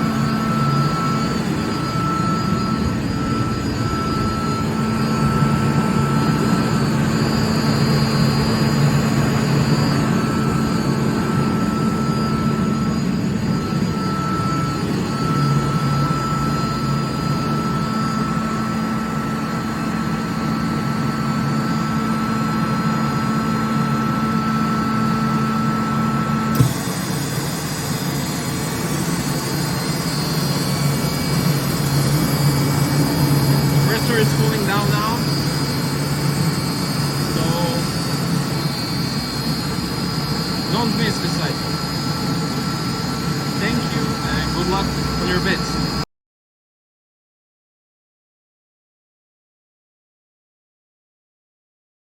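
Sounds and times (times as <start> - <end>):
air compressor hum and whine: 0.0 - 46.1
compressor click: 26.5 - 27.5.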